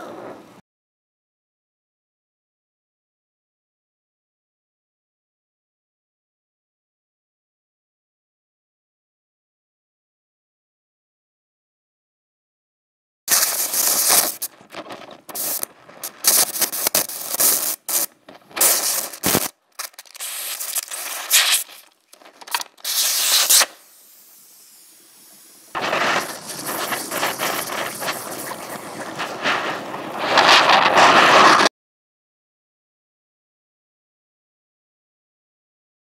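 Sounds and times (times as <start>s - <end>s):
torch flame hissing: 13.3s - 31.7s.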